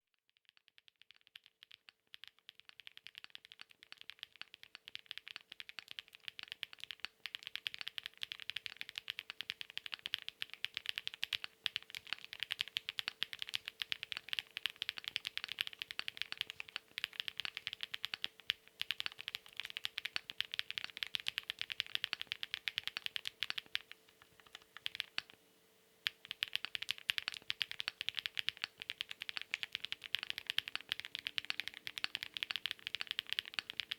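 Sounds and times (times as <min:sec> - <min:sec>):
fast mechanical keyboard typing: 0:01.0 - 0:25.4, 0:26.0 - 0:33.9.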